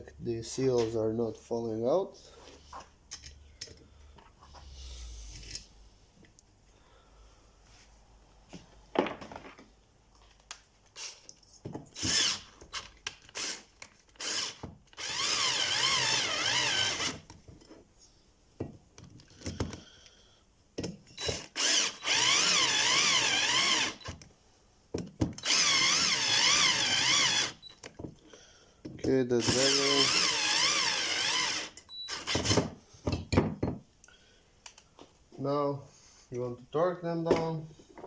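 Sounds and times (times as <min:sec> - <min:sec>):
power drill motor whine: 0:12.0 - 0:12.5, 0:14.2 - 0:17.2, 0:21.2 - 0:24.1, 0:25.4 - 0:27.7, 0:29.4 - 0:32.6.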